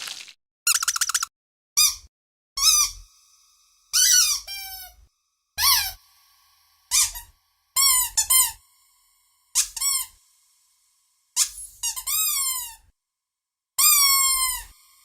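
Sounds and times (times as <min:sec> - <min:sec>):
high-pitched squeaks: 0:00.7 - 0:03.3, 0:05.6 - 0:06.0, 0:06.8 - 0:08.6, 0:09.5 - 0:10.2, 0:13.8 - 0:14.7.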